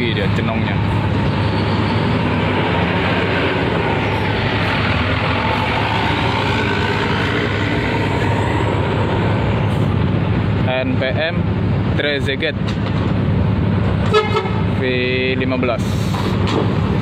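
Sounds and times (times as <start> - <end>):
bus engine drone: 0.0 - 17.0
tyre and road noise: 0.0 - 17.0.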